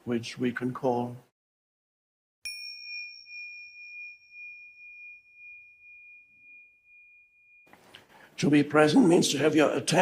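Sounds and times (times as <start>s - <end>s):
small metal bell ringing: 2.4s - 7.7s.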